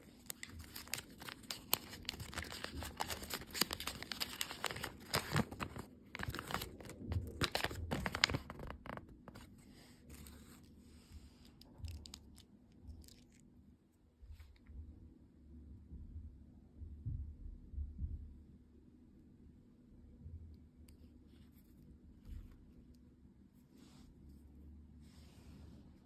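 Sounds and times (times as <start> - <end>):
plastic packaging crinkling: 0.0 - 9.4, 11.4 - 13.4.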